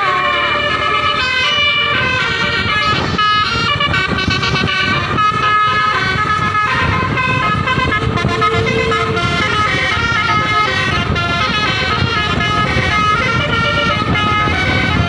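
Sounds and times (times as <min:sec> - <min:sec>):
bus musical horn melody: 0:00.0 - 0:15.0
low rumble: 0:01.8 - 0:13.5.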